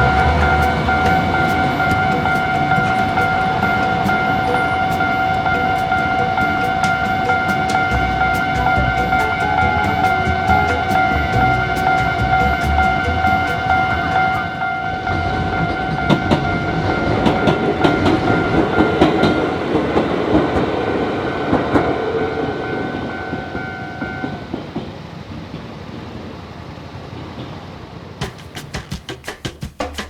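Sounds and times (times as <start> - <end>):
level-crossing alarm: 0.0 - 24.6
train wheels clacking over rail joints: 15.6 - 22.1.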